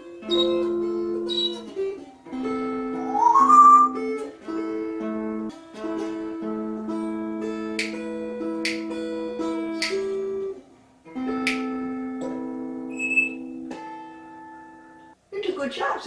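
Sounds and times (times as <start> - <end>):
dulcimer strummed: 0.0 - 10.5
bird rising whistle: 1.3 - 1.6, 3.0 - 4.0, 12.9 - 13.4.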